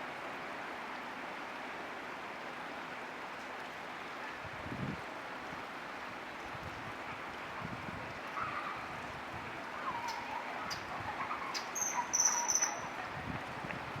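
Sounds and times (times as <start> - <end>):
kingfisher shrill calls: 10.0 - 12.9.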